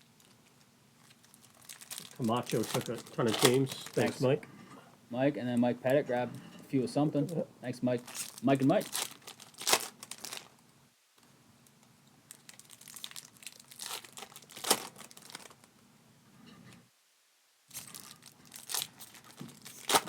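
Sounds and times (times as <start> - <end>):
card pack wrappers crinkling: 0.2 - 4.4, 8.0 - 10.6, 11.6 - 15.7, 17.7 - 20.0.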